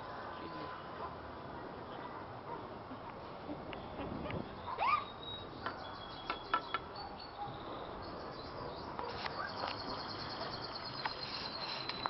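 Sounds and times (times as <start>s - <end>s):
small birds chirping: 2.9s - 12.0s.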